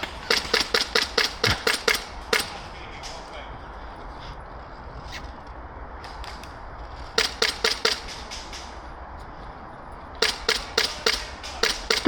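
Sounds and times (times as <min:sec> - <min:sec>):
airsoft gun shots: 0:00.0 - 0:03.3, 0:07.1 - 0:09.0, 0:10.2 - 0:12.0
distant airsoft shots: 0:00.0 - 0:03.5, 0:06.0 - 0:09.2, 0:10.0 - 0:12.0.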